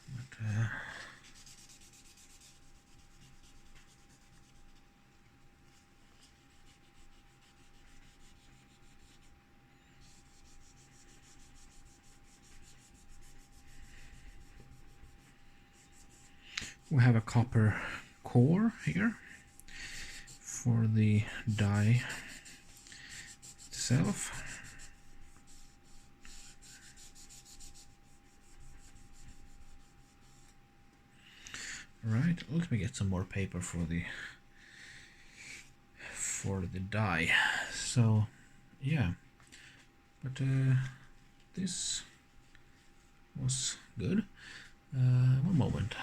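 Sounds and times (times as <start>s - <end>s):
paper wipe rubbing metal: 21.2s - 30.6s.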